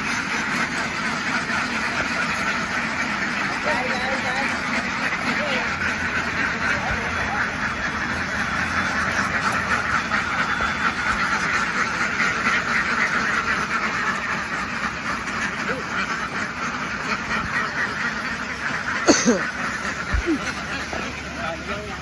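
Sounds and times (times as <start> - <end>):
flock of ducks quacking: 0.0 - 22.0
loud duck call: 0.0 - 22.0.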